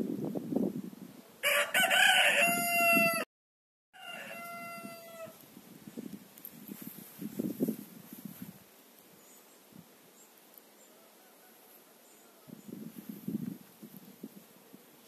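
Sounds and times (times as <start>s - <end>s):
rooster crowing: 1.4s - 3.3s, 4.0s - 5.4s, 10.8s - 12.6s.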